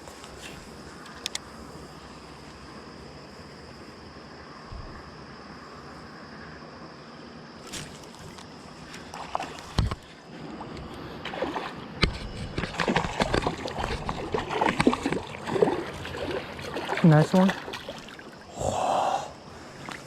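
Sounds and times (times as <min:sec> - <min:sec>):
creek water splashing: 0:07.6 - 0:18.6, 0:19.6 - 0:20.0.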